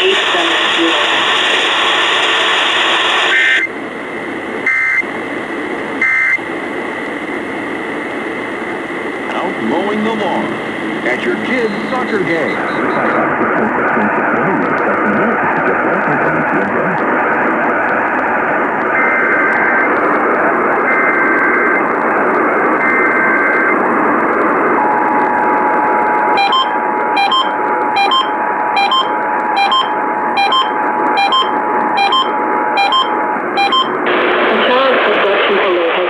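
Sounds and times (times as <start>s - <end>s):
radio static: 0.0s - 28.0s, 33.1s - 36.0s
screechy data header bursts: 4.4s - 19.9s
regular beep: 9.3s - 17.2s, 26.4s - 34.0s.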